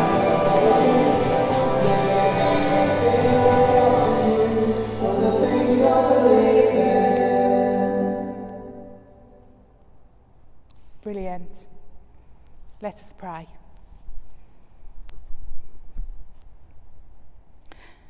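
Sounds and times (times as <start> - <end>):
instrumental accompaniment: 0.0 - 7.4
worship song singing: 0.0 - 9.5.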